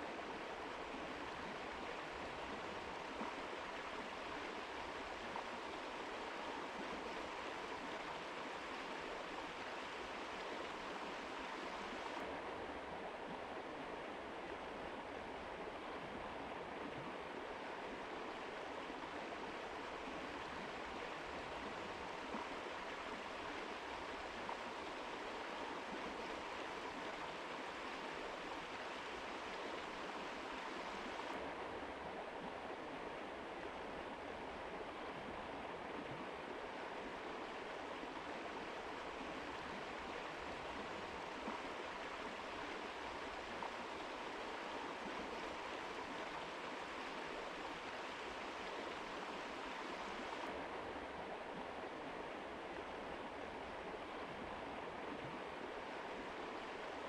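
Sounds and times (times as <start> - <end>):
river rushing over rocks: 33.2 - 57.0.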